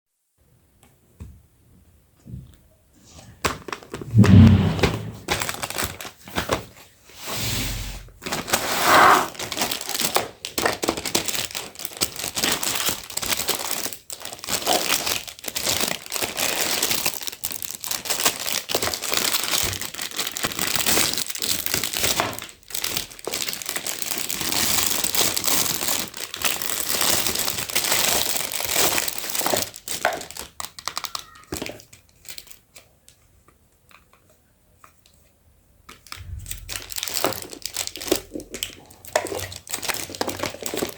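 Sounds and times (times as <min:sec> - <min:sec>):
toy packaging crinkling: 0:09.3 - 0:32.8, 0:35.9 - 0:40.9.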